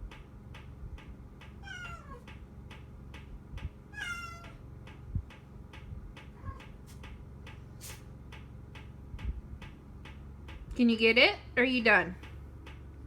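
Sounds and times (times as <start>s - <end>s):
faint regular ticking: 0.0s - 13.0s
kitten meowing: 1.6s - 2.3s, 4.0s - 4.6s.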